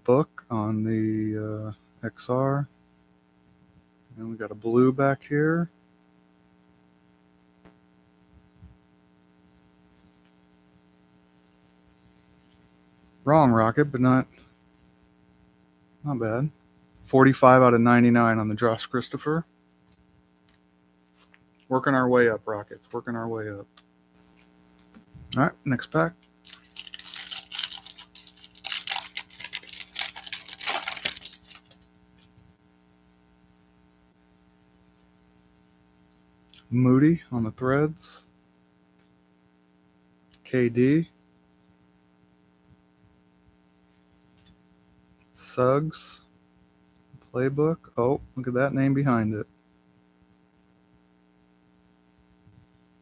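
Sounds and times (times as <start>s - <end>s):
low electrical hum: 0.0s - 53.0s
foil wrapper tearing and crinkling: 24.4s - 32.4s.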